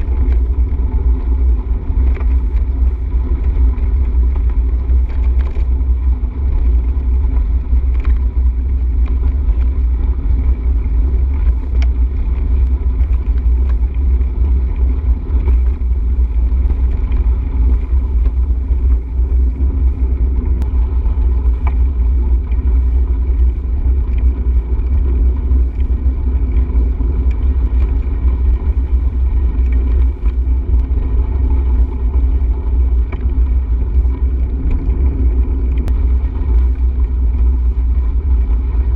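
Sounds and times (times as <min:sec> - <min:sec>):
wind buffeting microphone: 0:00.0 - 0:38.9.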